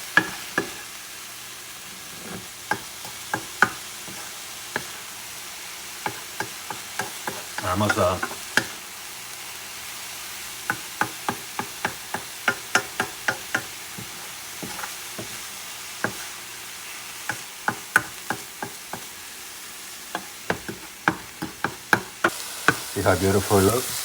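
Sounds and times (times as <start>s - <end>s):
rice sizzling in a pan: 0.0s - 24.0s
utensil scraping against pan: 0.2s - 0.9s, 1.8s - 5.1s, 6.0s - 8.8s, 10.7s - 16.4s.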